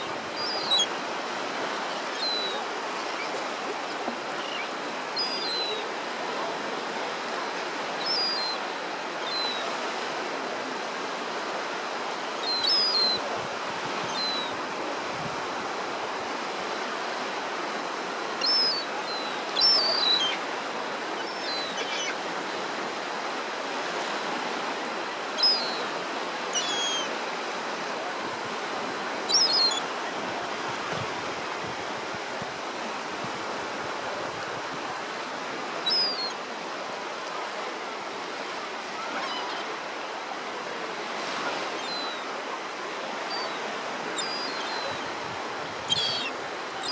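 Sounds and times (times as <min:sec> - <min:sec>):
surf washing on beach: 0:00.0 - 0:46.9
gulls crying: 0:43.4 - 0:46.9.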